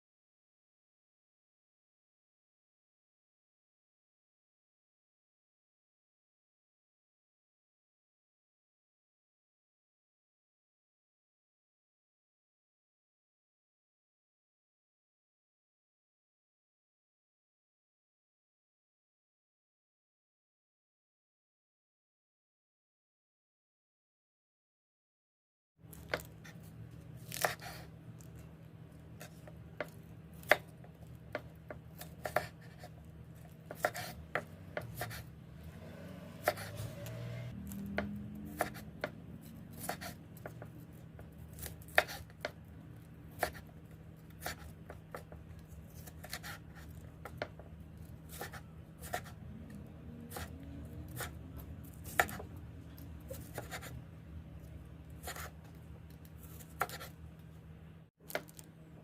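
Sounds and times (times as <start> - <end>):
knife chopping on a board: 27.2 - 27.9, 29.2 - 42.6, 43.4 - 43.7, 44.4 - 47.7, 48.3 - 49.4, 50.3 - 52.6, 53.3 - 53.9, 55.2 - 55.6, 56.4 - 57.1
steady low hum: 36.4 - 59.0.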